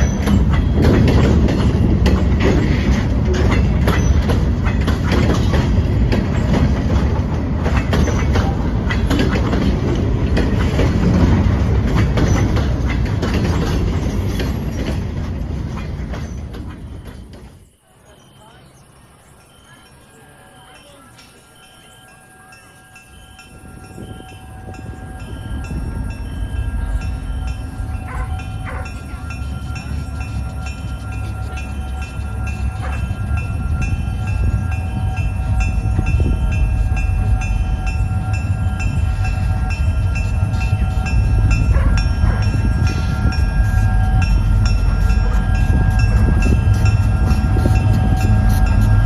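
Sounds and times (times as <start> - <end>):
bell ringing: 0.0 - 1.4, 17.7 - 49.0
model locomotive engine rumble: 0.0 - 49.0.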